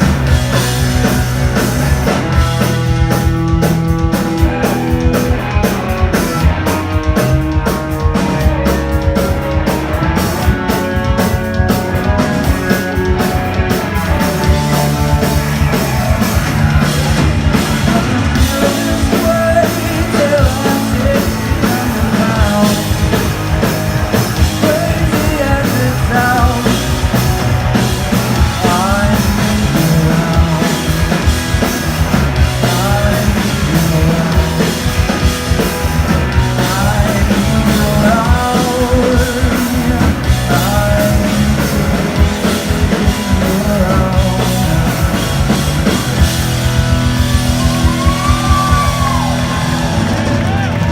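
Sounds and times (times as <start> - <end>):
amplified guitars and bass: 0.0 - 50.9
drum kit: 0.0 - 50.9
melodic lead line: 0.0 - 50.9.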